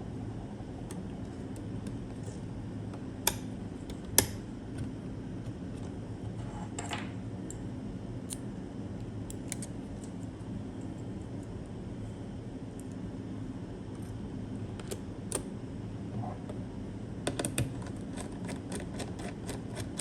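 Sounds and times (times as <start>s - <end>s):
steady low hum: 0.0s - 20.0s
sharp clicks of computer parts: 3.2s - 4.4s.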